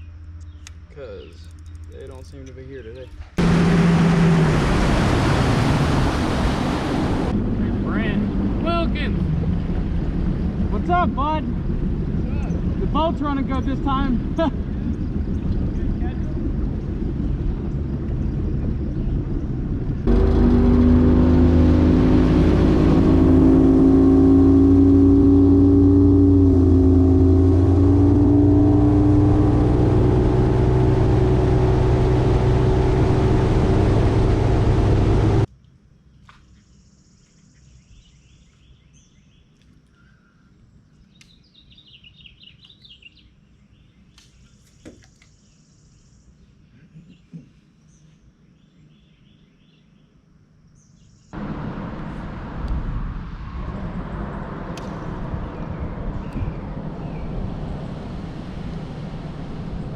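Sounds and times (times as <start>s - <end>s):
birds chirping: 0.0s - 4.2s, 10.7s - 21.9s, 36.0s - 52.2s, 53.9s - 57.9s
outboard motor running: 3.4s - 35.5s, 51.4s - 52.8s.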